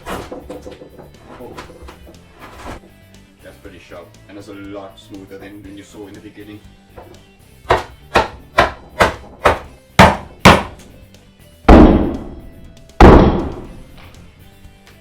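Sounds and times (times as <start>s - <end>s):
quiet background music: 0.0s - 15.0s
sharp knocks: 7.0s - 10.9s, 11.7s - 12.4s, 13.0s - 13.8s.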